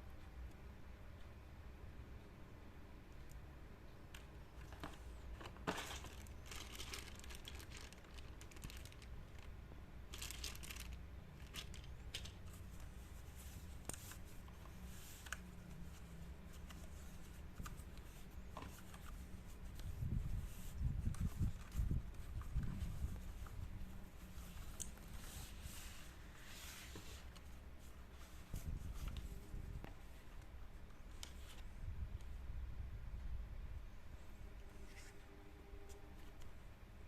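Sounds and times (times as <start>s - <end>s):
steady low hum: 0.0s - 37.0s
plastic and paper crinkling: 4.2s - 29.3s.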